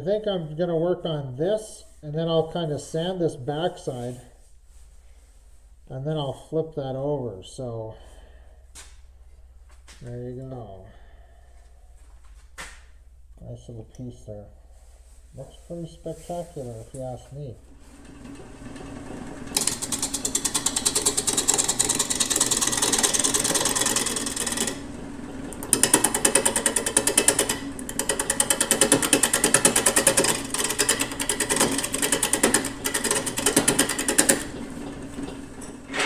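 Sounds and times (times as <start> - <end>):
wood lathe tool chattering: 17.8 - 36.0.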